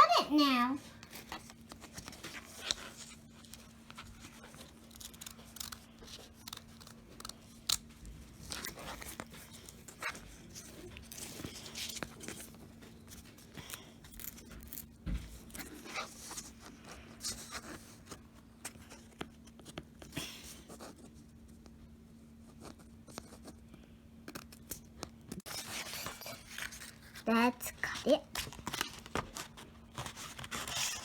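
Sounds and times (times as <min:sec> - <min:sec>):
paper rustling: 0:00.9 - 0:14.7, 0:25.4 - 0:31.0
scissors snipping paper: 0:01.8 - 0:10.4.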